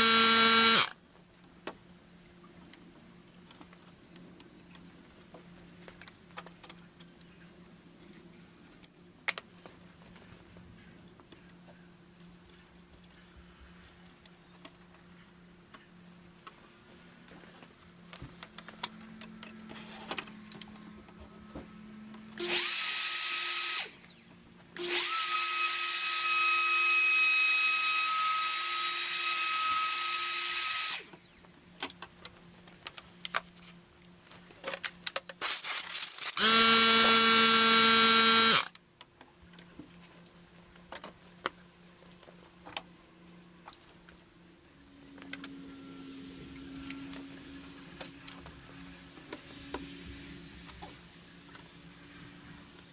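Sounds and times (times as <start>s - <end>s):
power tool whine: 0.0s - 0.9s, 22.4s - 31.4s, 35.4s - 38.7s
wood router running: 0.0s - 0.9s, 22.4s - 24.2s, 24.8s - 31.4s, 36.4s - 38.7s.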